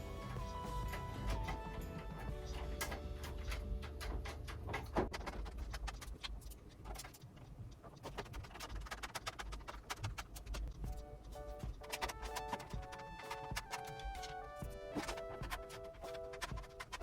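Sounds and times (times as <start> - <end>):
faint background music: 0.0 - 5.4, 10.1 - 17.0.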